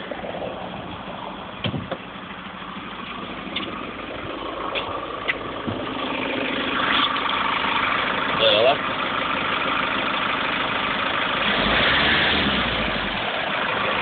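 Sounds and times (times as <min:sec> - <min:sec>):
diesel engine idling: 0:00.0 - 0:14.0.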